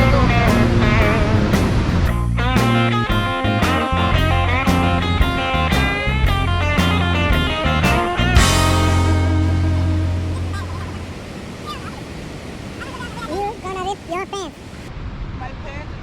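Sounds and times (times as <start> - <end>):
guitar rock music: 0.0 - 10.5.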